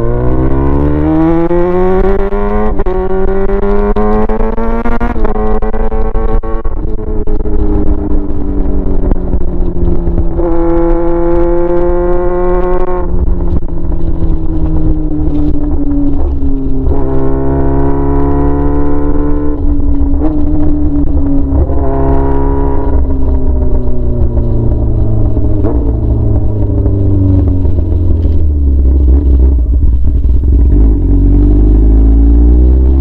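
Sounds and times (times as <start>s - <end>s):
loud motorcycle engine revving: 0.0s - 8.4s, 10.3s - 13.1s, 16.2s - 19.6s, 20.2s - 23.6s, 30.5s - 33.0s.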